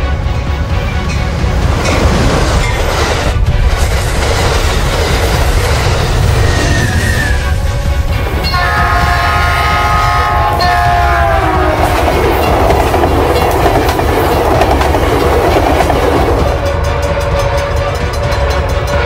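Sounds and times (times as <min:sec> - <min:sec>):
train rumbling on rails: 0:00.0 - 0:19.0
locomotive air horn: 0:06.9 - 0:12.2, 0:16.6 - 0:19.0.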